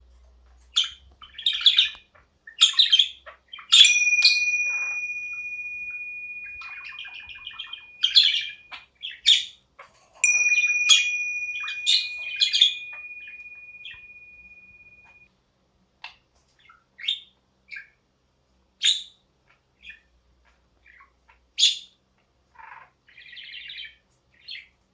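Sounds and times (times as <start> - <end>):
sharp bell-like ring: 3.8 - 8.5, 10.2 - 15.2
budgie chirping: 3.8 - 8.6, 10.2 - 15.2.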